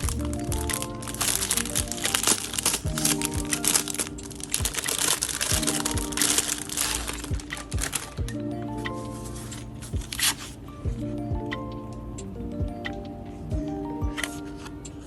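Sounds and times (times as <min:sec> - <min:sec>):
packaging crinkling: 0:00.0 - 0:08.2
background music with beat: 0:00.0 - 0:15.0.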